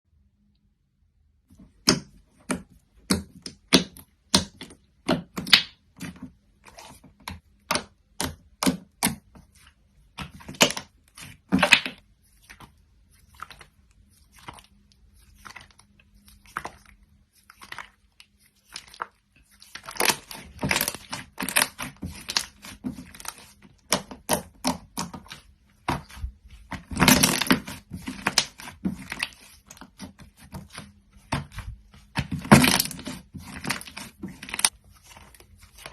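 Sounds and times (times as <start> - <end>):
slime clicking and popping: 1.8 - 5.8
slime crackling: 3.0 - 35.9.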